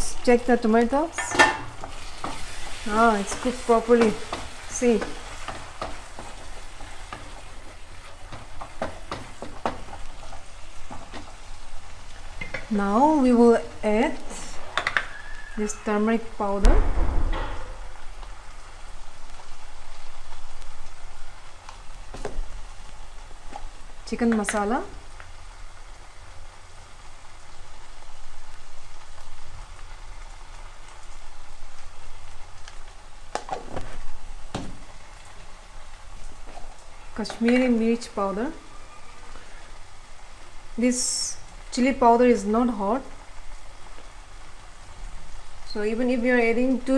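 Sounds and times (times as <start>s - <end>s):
masala sizzling in a pan: 0.0s - 46.9s
sharp knocks: 16.6s - 18.1s.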